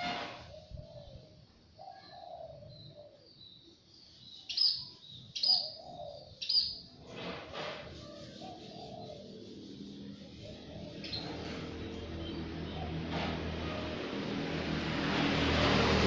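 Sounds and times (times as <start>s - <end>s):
faint lower bird calls: 0.0s - 6.9s
sharp high bird chirps: 4.1s - 6.9s.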